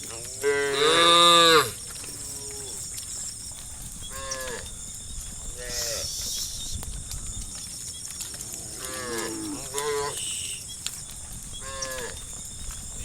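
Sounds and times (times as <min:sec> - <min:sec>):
cows mooing: 0:00.0 - 0:03.0, 0:04.0 - 0:04.8, 0:08.3 - 0:10.7, 0:11.5 - 0:12.4.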